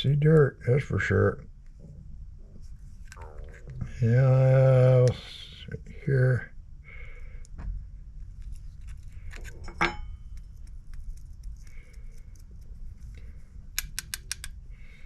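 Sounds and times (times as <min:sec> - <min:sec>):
metal tool clicking on brass: 0:13.8 - 0:14.6.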